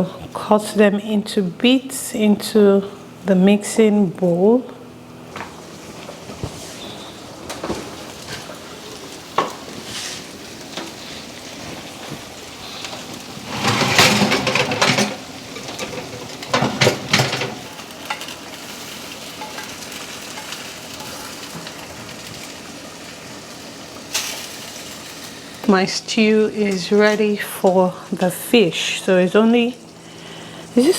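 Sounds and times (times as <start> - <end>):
food sizzling in a pan: 5.6 - 30.9
kitchen clatter: 9.3 - 22.6.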